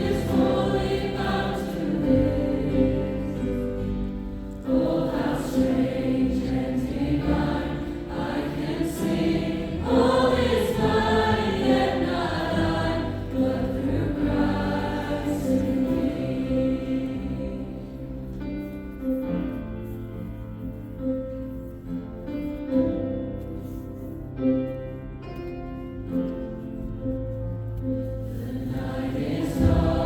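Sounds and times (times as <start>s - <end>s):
choir singing: 0.0s - 18.4s, 28.2s - 30.0s.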